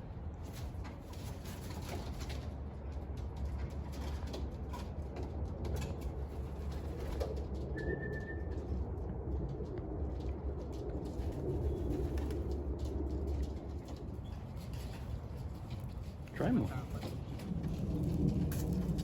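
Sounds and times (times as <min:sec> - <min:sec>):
steady low rumble: 0:00.0 - 0:19.0
high whistle-like tone: 0:07.8 - 0:08.5.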